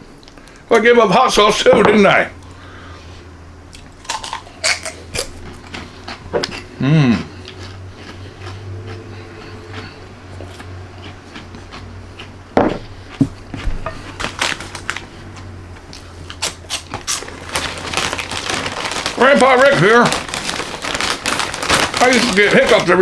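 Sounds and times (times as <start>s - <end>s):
steady low hum: 0.0s - 22.0s
crunching pork rinds: 3.7s - 23.0s.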